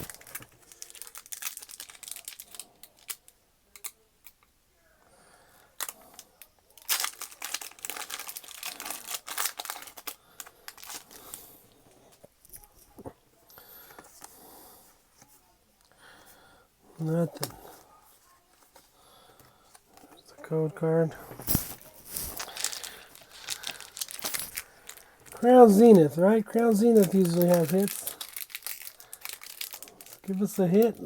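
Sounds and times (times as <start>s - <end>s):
foil wrapper tearing and crinkling: 0.0s - 3.2s, 5.8s - 11.4s, 21.4s - 26.0s, 26.6s - 31.0s.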